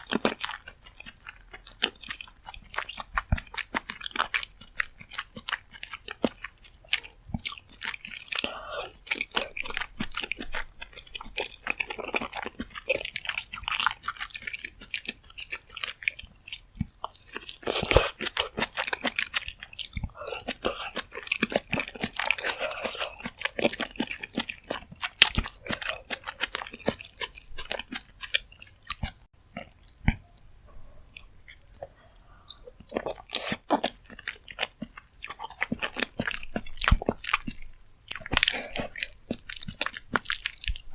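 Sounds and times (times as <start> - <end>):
wet chewing and mouth smacks: 0.0 - 40.9
crunchy bites: 16.8 - 30.2, 32.5 - 40.9.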